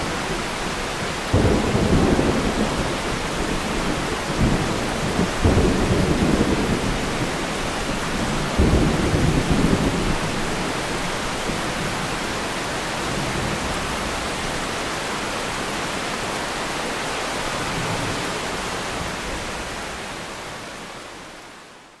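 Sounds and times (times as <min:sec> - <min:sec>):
steady rain: 0:00.0 - 0:22.0
thunder rumbles: 0:01.3 - 0:12.3.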